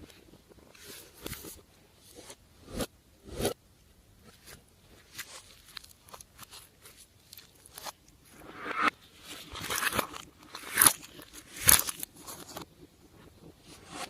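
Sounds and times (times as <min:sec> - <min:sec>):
slime crackling and squelching: 0:04.4 - 0:08.3, 0:09.2 - 0:12.6.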